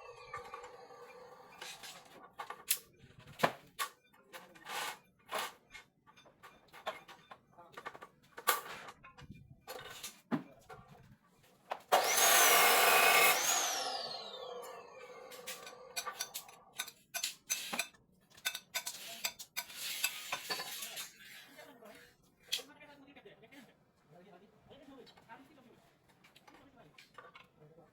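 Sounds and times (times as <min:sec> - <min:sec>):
electric motor whine: 0:00.0 - 0:02.0, 0:12.0 - 0:16.6.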